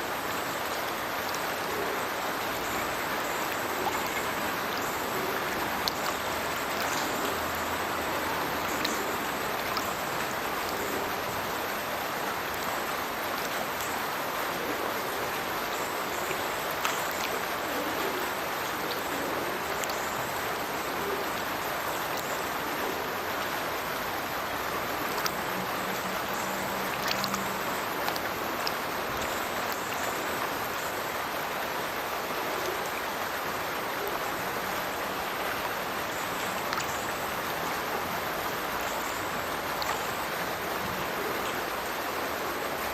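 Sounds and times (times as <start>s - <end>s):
water rushing from a culvert: 0.0s - 42.9s.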